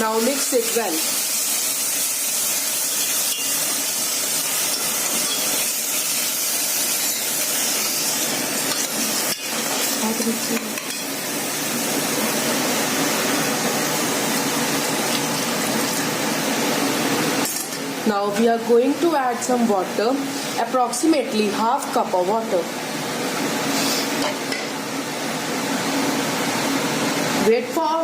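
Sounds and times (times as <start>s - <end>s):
paste sizzling in hot oil: 0.0s - 17.5s.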